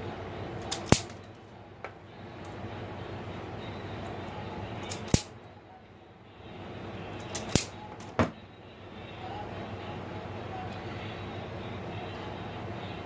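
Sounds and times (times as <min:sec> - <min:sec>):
steady low hum: 0:00.0 - 0:13.0
wire cutter snipping wire: 0:00.6 - 0:01.3, 0:04.8 - 0:05.3, 0:07.2 - 0:08.1.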